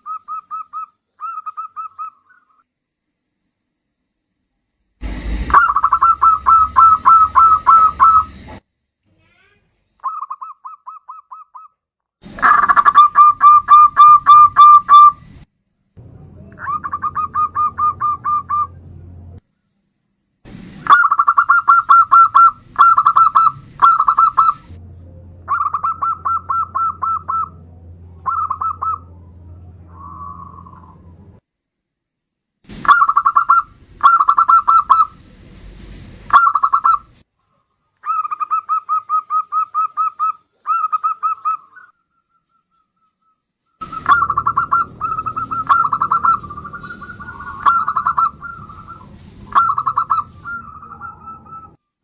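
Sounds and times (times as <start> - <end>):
dove rolling coos: 5.5 - 8.3, 20.9 - 24.8, 25.5 - 27.6, 28.2 - 29.2, 43.8 - 51.7.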